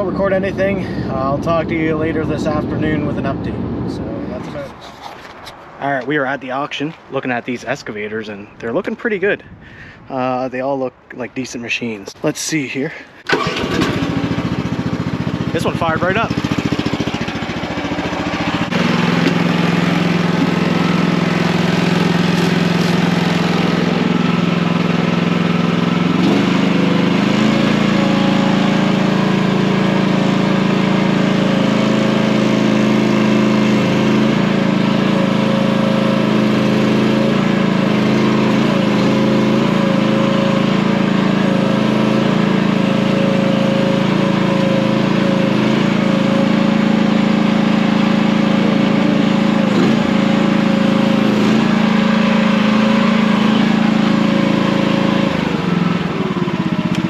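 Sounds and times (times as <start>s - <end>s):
excavator engine running: 13.1s - 57.0s.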